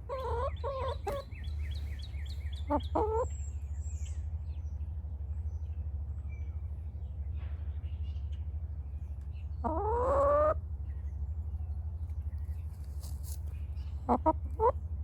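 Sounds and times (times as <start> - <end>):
hens chirping: 0.0 - 3.7, 9.5 - 10.7, 12.4 - 14.8.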